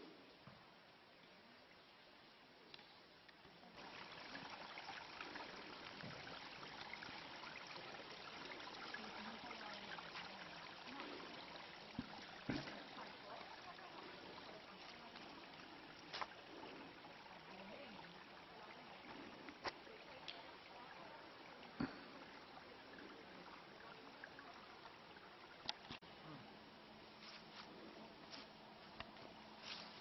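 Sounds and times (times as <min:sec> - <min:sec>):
stream splashing over rocks: 0:03.5 - 0:26.1.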